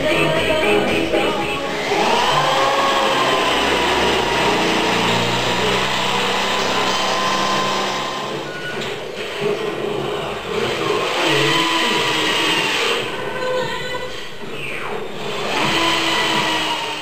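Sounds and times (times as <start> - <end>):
power tool motor whine: 1.6 - 9.0, 15.2 - 17.0
rushing noise: 1.7 - 8.8.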